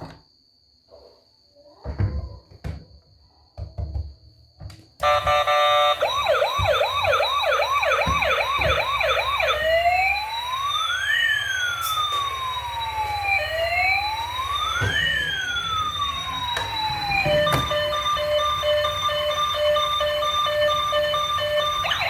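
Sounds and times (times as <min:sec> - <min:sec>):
electronic police siren: 0:05.0 - 0:22.0.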